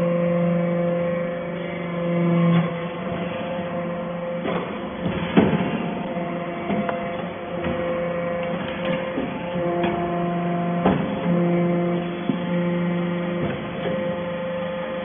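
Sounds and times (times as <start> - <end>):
hydraulic unit humming: 0.0 - 15.0
metal knocks and clanks: 4.4 - 12.7.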